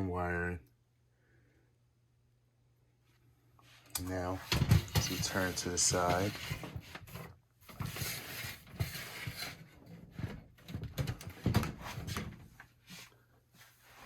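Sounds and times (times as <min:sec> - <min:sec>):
plastic creaks scrapes and knocks: 0:04.2 - 0:12.6.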